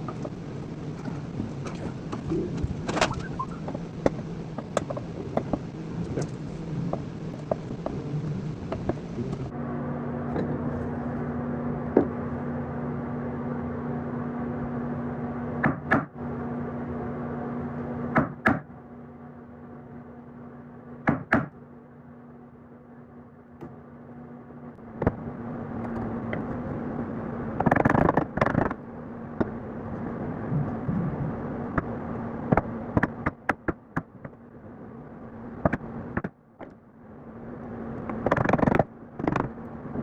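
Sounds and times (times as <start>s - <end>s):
low hum: 0.0s - 40.0s
sharp knocks: 21.0s - 21.6s.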